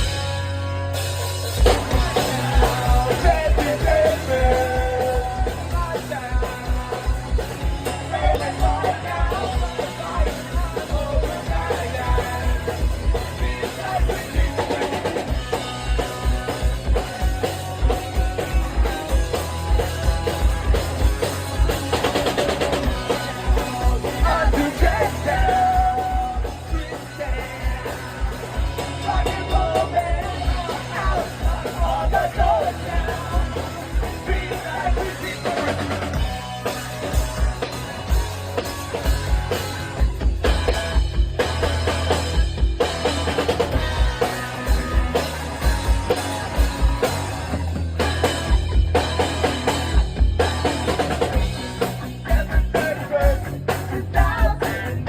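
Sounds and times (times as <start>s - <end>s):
rock band playing live: 0.0s - 55.0s
person singing: 1.8s - 18.9s, 22.2s - 36.3s, 51.2s - 55.0s.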